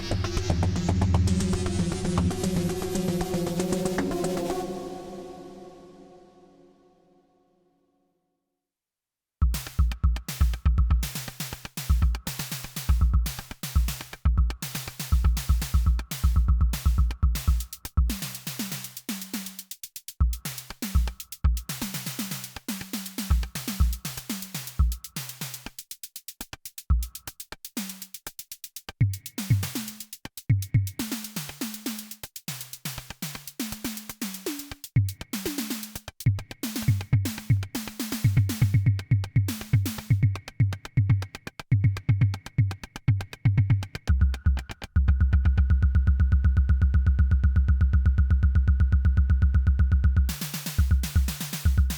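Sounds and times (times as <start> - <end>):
synthesizer percussive pattern: 0.0 - 4.9, 9.4 - 18.8, 32.8 - 51.9
synthesizer bass notes: 44.1 - 51.9.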